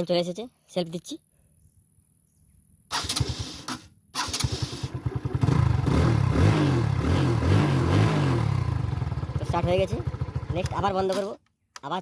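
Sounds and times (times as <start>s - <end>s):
starter motor cranking: 2.9s - 5.6s
motorcycle engine revving: 2.9s - 11.2s.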